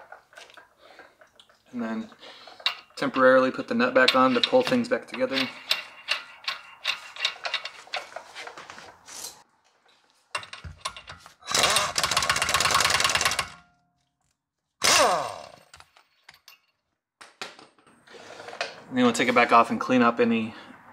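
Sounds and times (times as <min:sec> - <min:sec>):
impact wrench hammering: 0:10.4 - 0:13.6.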